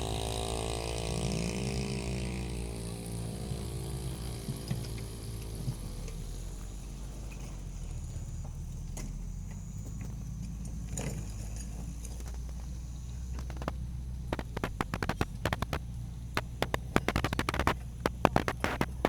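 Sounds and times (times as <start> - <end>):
vehicle engine rumbling: 0.0 - 19.0
sharp clicks and crackles: 12.0 - 19.0.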